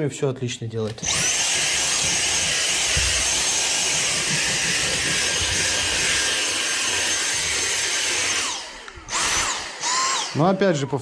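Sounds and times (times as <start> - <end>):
vacuum cleaner motor whine: 1.0 - 11.0.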